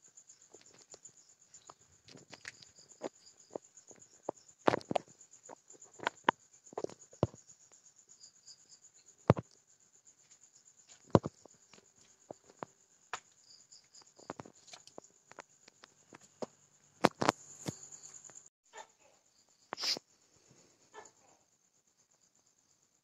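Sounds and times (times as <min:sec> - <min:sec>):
crickets chirping: 0:00.0 - 0:23.0.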